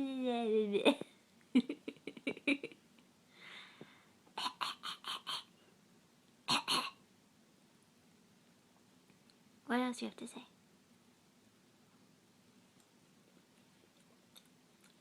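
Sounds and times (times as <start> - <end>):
small child coughing: 6.5 - 7.0.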